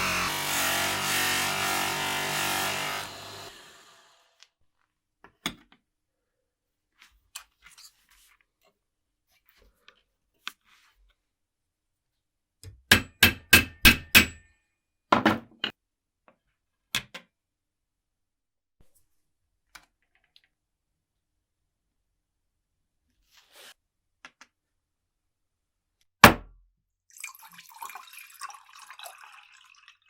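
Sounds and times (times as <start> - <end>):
sharp knocks of hand tools: 12.6 - 14.5.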